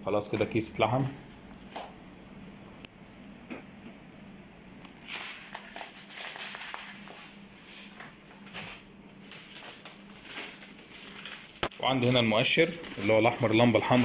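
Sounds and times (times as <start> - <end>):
plastic bag crinkling: 5.0 - 7.2, 8.6 - 14.0.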